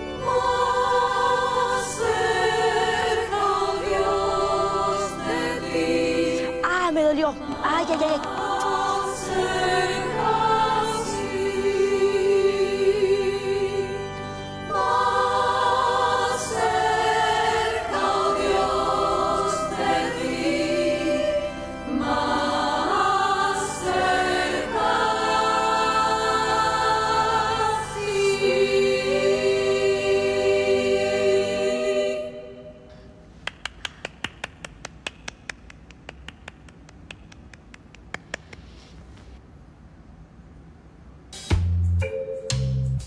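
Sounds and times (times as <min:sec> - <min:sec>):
choir of nuns singing: 0:00.0 - 0:06.6, 0:07.4 - 0:33.2.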